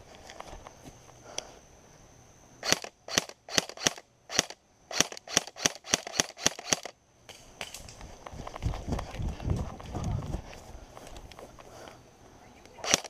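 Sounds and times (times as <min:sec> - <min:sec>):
airsoft gun shots: 0:02.6 - 0:06.9.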